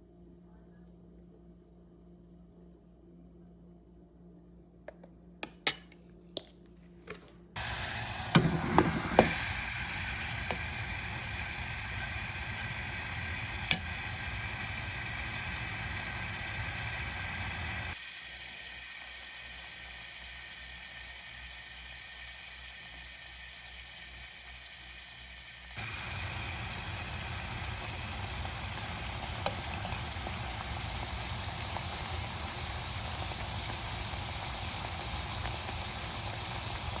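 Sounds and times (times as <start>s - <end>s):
utensil knocks and clinks: 5.4s - 6.5s
food sizzling in a pan: 7.6s - 37.0s.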